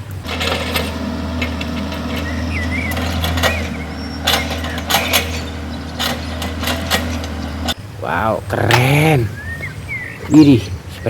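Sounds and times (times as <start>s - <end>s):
sharp clicks and knocks: 0.0s - 7.8s
heavy vehicle engine rumbling: 0.0s - 9.6s.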